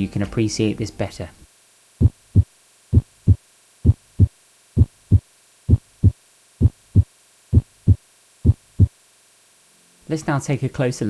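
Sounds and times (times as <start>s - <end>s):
heartbeat thumps: 2.0s - 9.0s.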